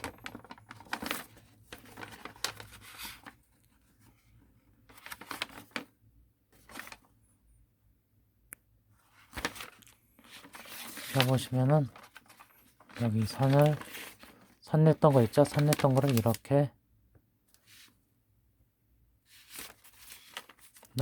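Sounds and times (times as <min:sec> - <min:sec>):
paper rustling and crinkling: 0:00.0 - 0:07.2, 0:09.0 - 0:16.6, 0:19.3 - 0:21.0.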